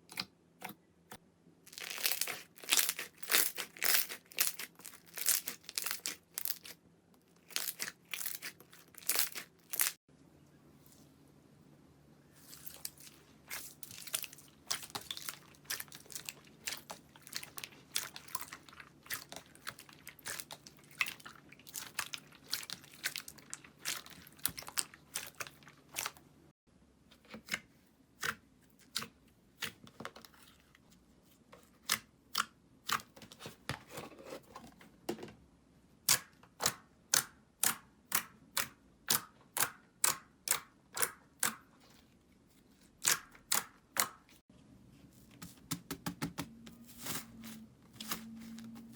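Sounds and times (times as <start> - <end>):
slime crackling and popping: 1.7 - 6.7, 7.5 - 10.0.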